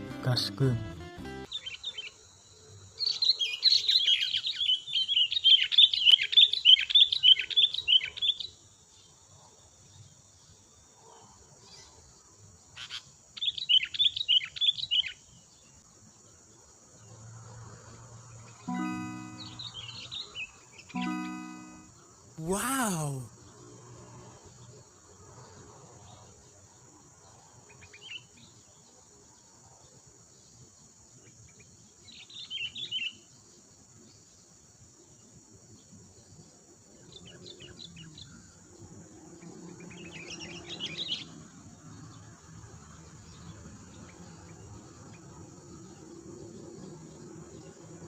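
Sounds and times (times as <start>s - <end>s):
crickets droning: 1.5s - 18.6s, 23.4s - 48.0s
songbird chirping: 18.5s - 23.3s.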